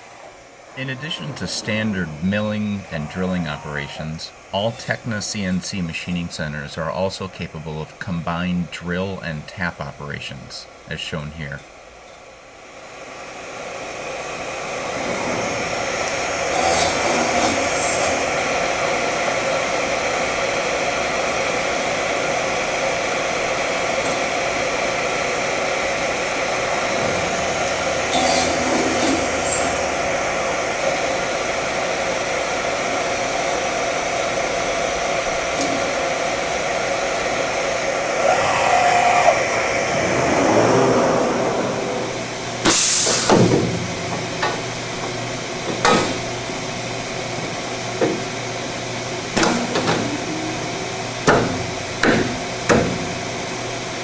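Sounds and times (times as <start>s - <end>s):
sharp machining noises: 16.4s - 18.5s, 26.7s - 30.4s
machine spindle whirring: 23.0s - 46.5s.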